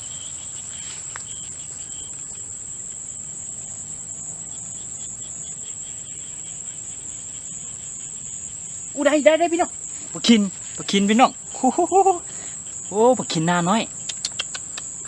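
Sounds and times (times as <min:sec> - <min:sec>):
insect high-pitched trill: 0:00.0 - 0:15.0
pulsing insect chirp: 0:00.0 - 0:15.0.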